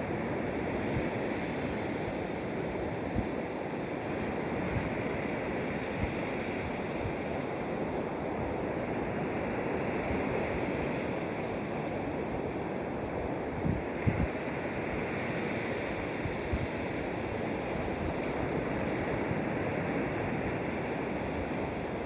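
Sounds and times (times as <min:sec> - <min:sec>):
wind buffeting microphone: 0:13.2 - 0:15.1.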